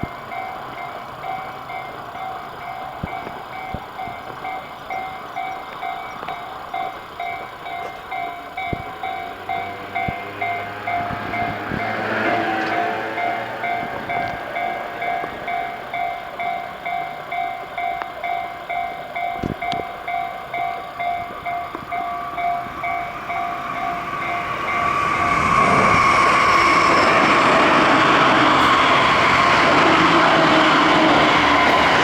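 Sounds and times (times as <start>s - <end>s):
electric train running: 0.0s - 32.0s
level-crossing warning bell: 0.0s - 32.0s.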